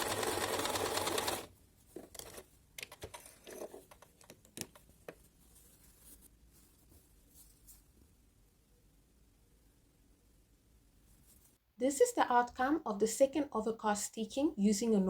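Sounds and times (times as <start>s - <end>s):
sewing machine running: 0.0s - 1.5s.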